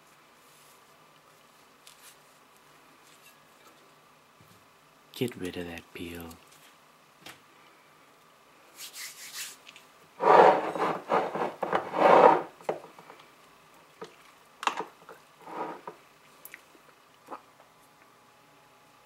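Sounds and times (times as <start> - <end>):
rubbing and scraping by hand: 10.2 - 12.6, 15.4 - 16.0.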